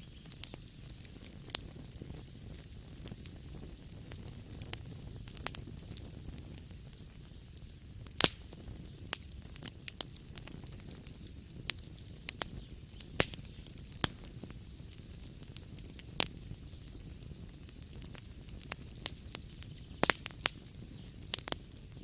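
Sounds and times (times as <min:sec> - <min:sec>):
wood fire crackling: 0:00.0 - 0:22.0.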